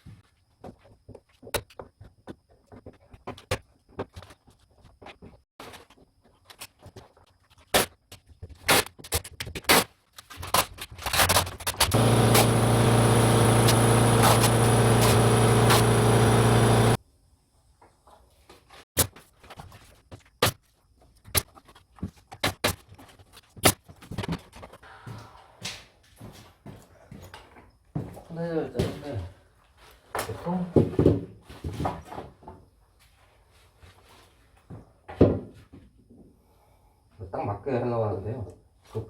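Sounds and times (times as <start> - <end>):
electric saw running: 11.9 - 17.0.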